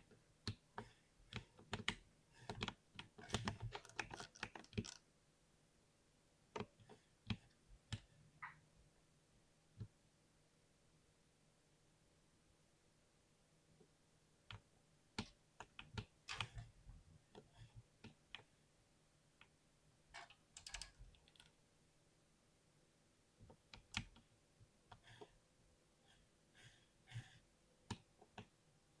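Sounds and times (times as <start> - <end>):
keyboard key clicks: 20.6 - 21.5.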